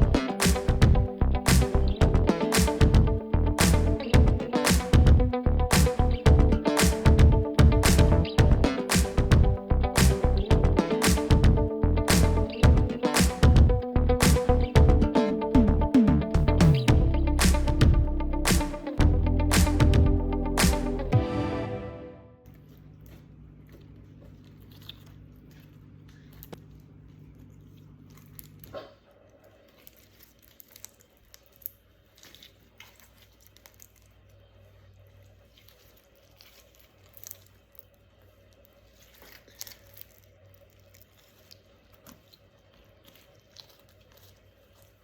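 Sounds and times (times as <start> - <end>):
low steady hum: 0.0 - 28.6
slime and plastic crinkling: 22.6 - 45.0.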